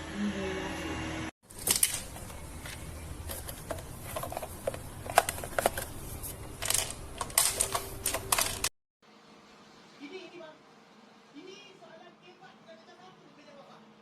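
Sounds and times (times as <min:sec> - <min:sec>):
clicks and clatter of handling: 0:01.5 - 0:08.7.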